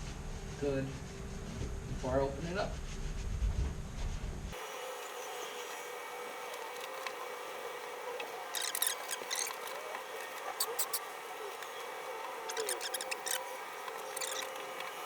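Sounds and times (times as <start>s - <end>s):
rubbing and wiping: 0.9s - 4.6s
scratchy scrubbing strokes: 8.5s - 14.9s.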